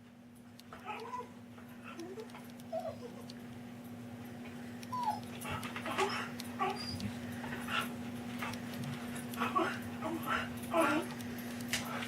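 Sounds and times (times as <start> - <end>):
dog whining and whimpering: 0.7 - 3.4, 4.9 - 8.0, 9.4 - 11.2
dog grumbling yips: 0.8 - 3.3, 4.9 - 7.0.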